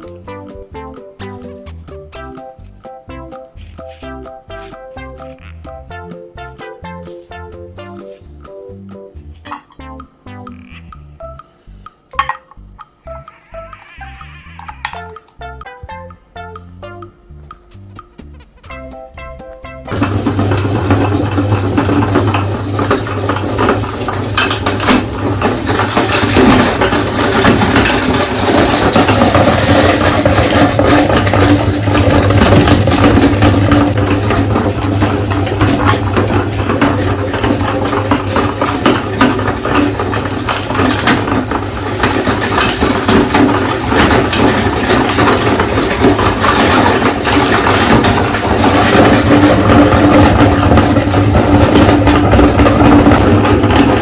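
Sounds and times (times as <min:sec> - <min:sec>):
hard candy cracking and rattling: 0:19.9 - 0:54.0.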